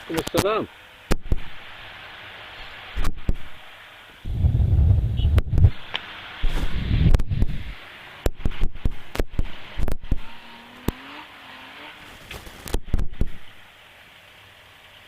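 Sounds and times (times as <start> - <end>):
vehicle engine revving: 4.2 - 7.8, 8.4 - 13.5.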